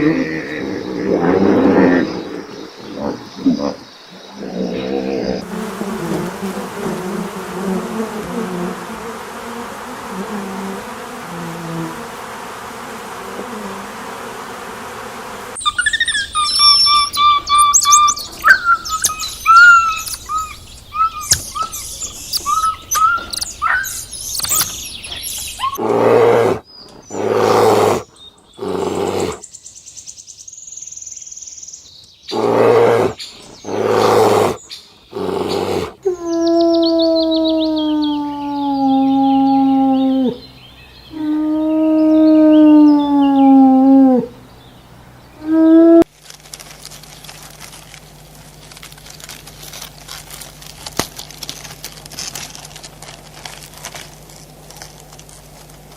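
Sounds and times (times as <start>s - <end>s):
birds chirping and twittering: 0.0s - 10.1s, 10.8s - 41.2s, 44.3s - 45.4s
steady noise: 5.4s - 9.4s
loud animal calls: 15.6s - 28.0s, 32.3s - 40.4s.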